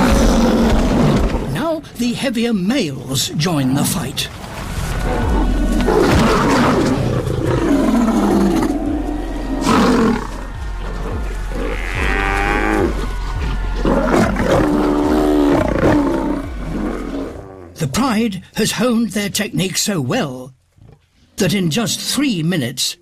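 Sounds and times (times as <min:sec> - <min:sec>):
lions growling and roaring: 0:00.0 - 0:01.7, 0:03.6 - 0:17.8
music score: 0:04.7 - 0:17.4.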